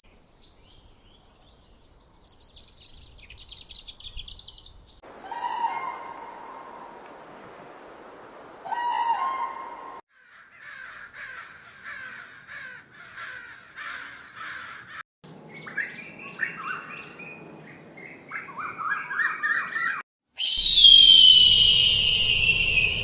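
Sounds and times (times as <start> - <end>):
bird calls falling in pitch: 5.1 - 6.6, 8.6 - 10.0
harsh crow-like calls: 5.2 - 6.7, 8.6 - 15.0.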